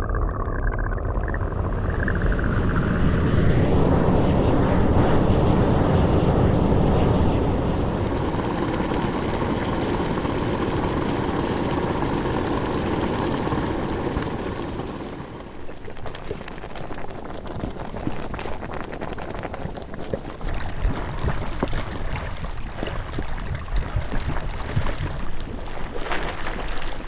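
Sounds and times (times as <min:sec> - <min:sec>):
steam venting roar: 0:01.2 - 0:15.6.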